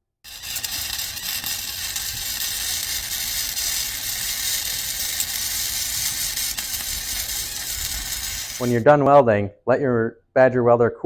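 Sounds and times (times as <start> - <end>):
welder arc burning: 0.2 - 8.9.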